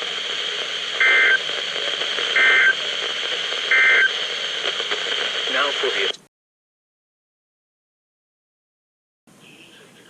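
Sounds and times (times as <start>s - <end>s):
radio hiss: 0.0s - 6.3s, 9.4s - 10.0s
electronic data bursts: 0.4s - 6.0s.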